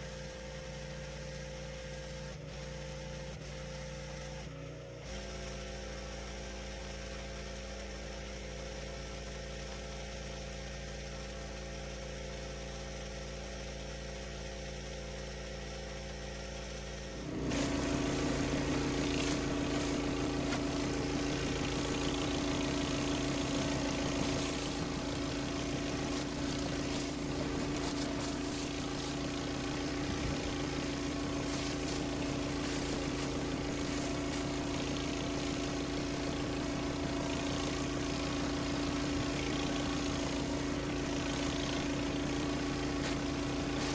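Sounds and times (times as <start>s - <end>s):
pressure washer engine running: 0.0s - 4.2s, 17.2s - 43.9s
water spraying hiss: 17.5s - 43.9s.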